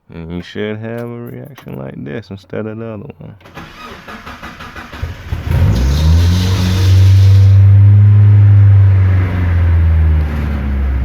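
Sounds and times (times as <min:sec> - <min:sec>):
starter cranking engine: 0:03.4 - 0:07.8.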